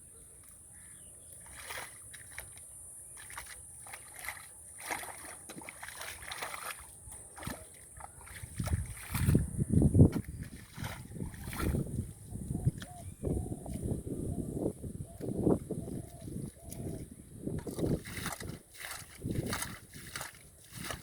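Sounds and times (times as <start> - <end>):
river water splashing: 1.3 - 12.0, 17.6 - 21.0.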